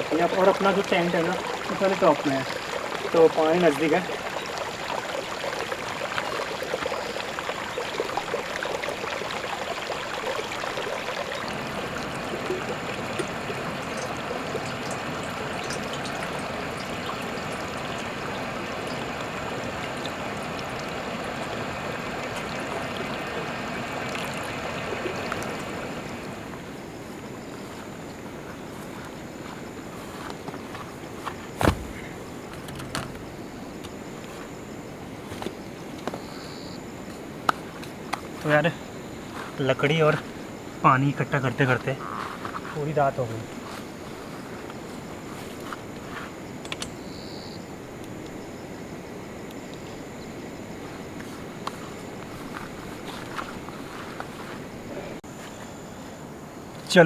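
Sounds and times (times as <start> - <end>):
stream water rushing: 0.0 - 30.3, 31.1 - 35.0.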